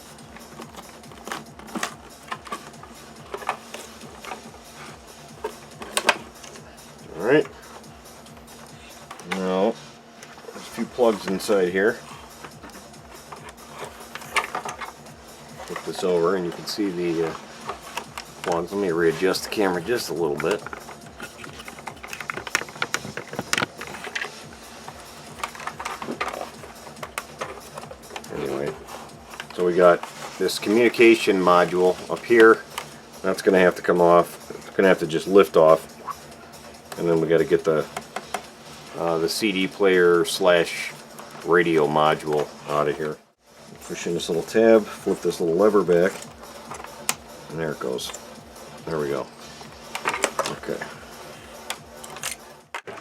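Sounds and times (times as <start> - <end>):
hand tools clicking and knocking: 0.0 - 6.7, 7.4 - 9.5, 10.2 - 39.2, 44.5 - 48.4, 49.0 - 53.0
plastic panels being handled: 0.0 - 36.2, 36.8 - 43.2, 43.9 - 53.0.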